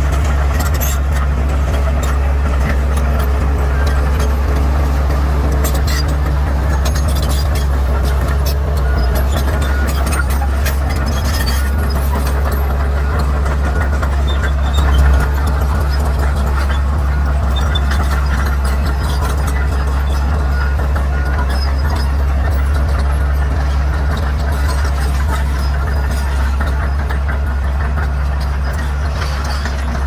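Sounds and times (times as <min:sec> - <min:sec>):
bulldozer diesel engine running: 0:00.0 - 0:30.0.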